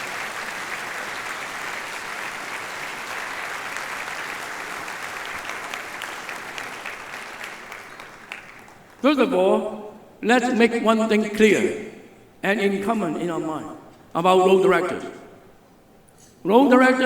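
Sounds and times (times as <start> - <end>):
audience applauding: 0.0 - 9.1.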